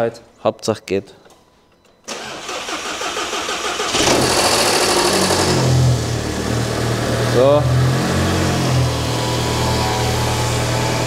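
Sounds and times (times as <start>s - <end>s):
car engine idling: 3.1s - 11.0s.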